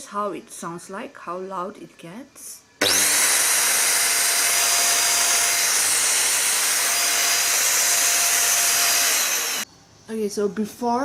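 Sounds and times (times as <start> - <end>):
stick vacuum cleaner running: 2.8 - 9.6.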